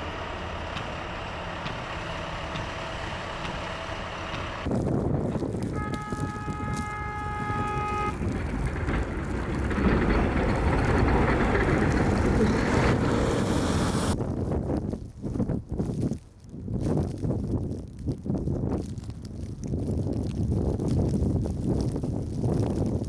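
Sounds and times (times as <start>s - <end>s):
wind buffeting microphone: 4.6s - 23.0s
vehicle horn blast: 5.7s - 10.4s.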